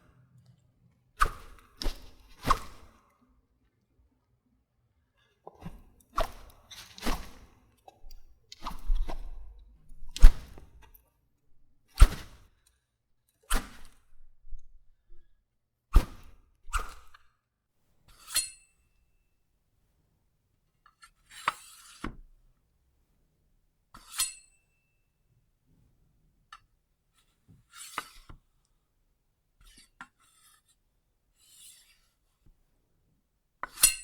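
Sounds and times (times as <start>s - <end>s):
sword hits and swishes: 1.2s - 2.9s, 5.7s - 7.5s, 8.6s - 10.8s, 12.0s - 12.4s, 13.5s - 14.0s, 16.0s - 17.1s, 24.1s - 24.5s, 33.7s - 34.0s.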